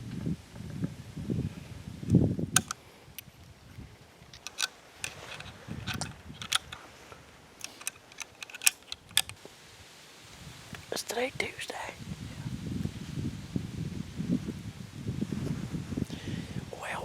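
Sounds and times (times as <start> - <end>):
gear handling clicks: 4.4 - 6.8, 7.6 - 9.4.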